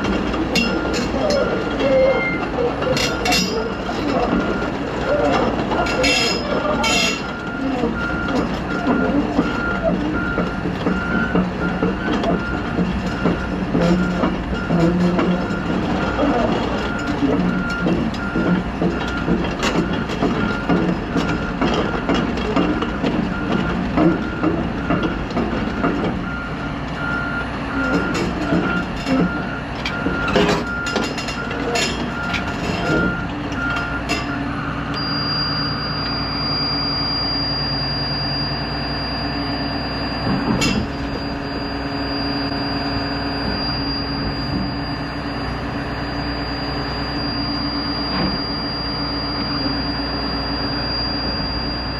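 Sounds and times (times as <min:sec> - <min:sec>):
metal clanks: 0:00.0 - 0:26.2, 0:27.8 - 0:34.4
diesel engine running: 0:00.0 - 0:51.9
backup alarm beeping: 0:06.0 - 0:16.2, 0:16.8 - 0:51.9.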